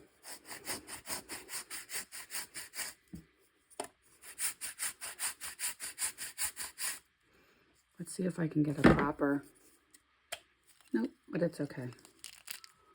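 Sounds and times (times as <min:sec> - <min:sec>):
chalk block grating: 0:00.0 - 0:03.2, 0:04.2 - 0:07.0.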